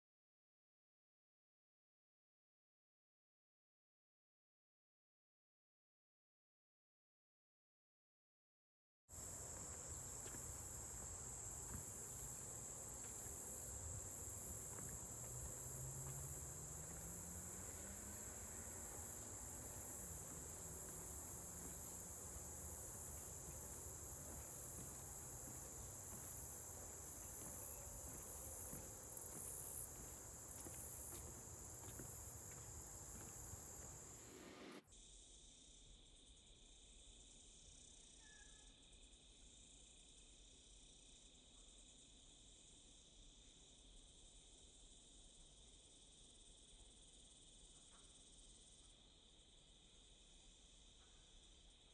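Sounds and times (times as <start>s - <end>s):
outdoor background noise: 9.1s - 51.9s
quieter insect drone: 9.1s - 51.9s
insects chirring: 9.2s - 34.8s.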